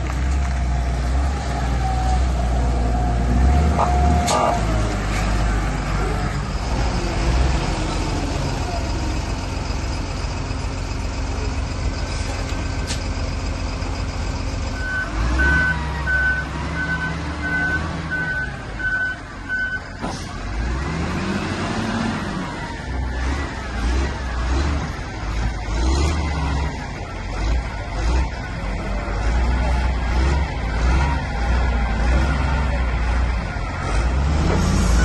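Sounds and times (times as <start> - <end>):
heavy vehicle engine revving: 0.0 - 35.0
reversing alarm beeping: 14.8 - 19.9.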